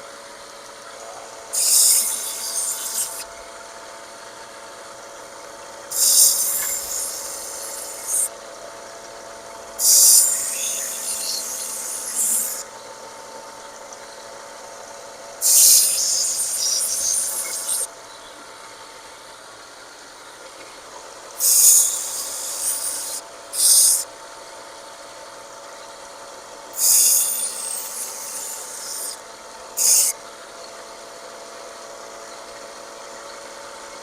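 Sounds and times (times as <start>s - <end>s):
grinder motor running: 0.0s - 18.0s, 21.0s - 25.8s, 26.5s - 30.7s
harsh high grinding of steel: 1.5s - 3.3s, 5.9s - 8.3s, 9.8s - 12.7s, 15.4s - 17.9s, 21.4s - 24.0s, 26.7s - 29.2s, 29.8s - 30.2s.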